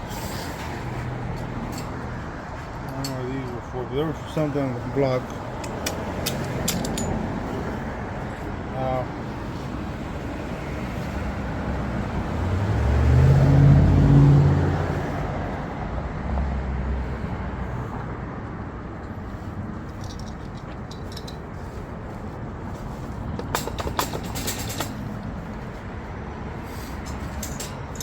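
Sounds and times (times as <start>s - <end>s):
vehicle driving past: 9.7s - 18.5s.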